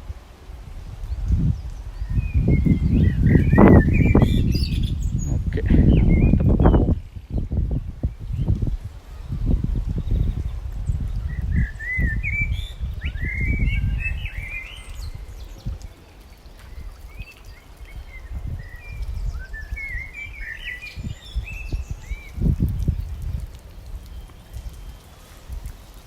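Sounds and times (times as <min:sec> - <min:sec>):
low rumbling noise: 0:00.0 - 0:15.9
songbirds chirping: 0:00.9 - 0:26.0.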